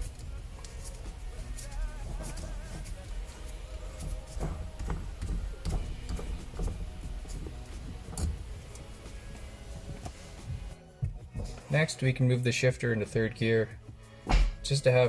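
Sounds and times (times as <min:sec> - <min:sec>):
quiet background music: 0:00.0 - 0:15.0.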